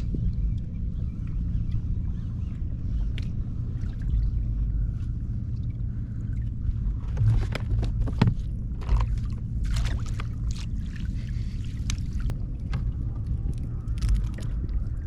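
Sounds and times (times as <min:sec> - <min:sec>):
water lapping against hull: 0:00.0 - 0:15.0
wind rumble on microphone: 0:00.0 - 0:15.0
knocks and splashes: 0:07.0 - 0:11.2.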